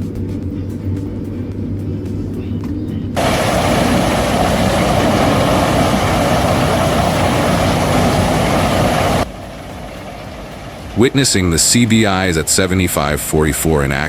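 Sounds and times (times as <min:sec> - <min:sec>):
low engine hum: 0:00.0 - 0:12.4
loud rushing machine noise: 0:03.2 - 0:12.0.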